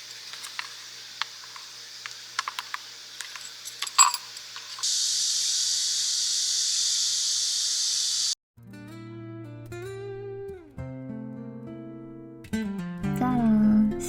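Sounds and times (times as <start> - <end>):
cooking gear clicks and taps: 0.0 - 4.9
sharp clink: 0.0 - 4.9
steady high hiss: 0.0 - 8.4.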